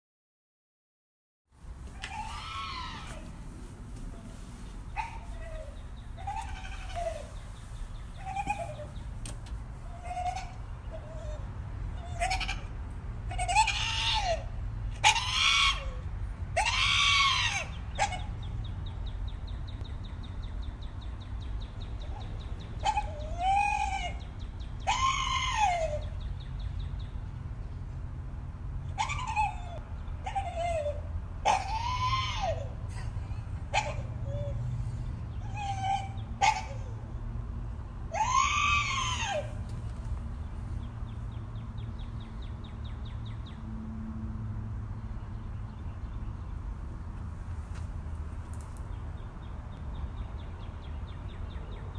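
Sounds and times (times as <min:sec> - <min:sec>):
dog screaming calls: 0:02.0 - 0:03.5, 0:04.9 - 0:07.5, 0:08.1 - 0:09.0, 0:09.8 - 0:18.4, 0:22.1 - 0:26.2, 0:29.0 - 0:32.9, 0:33.7 - 0:34.6, 0:35.3 - 0:37.1, 0:38.1 - 0:39.7.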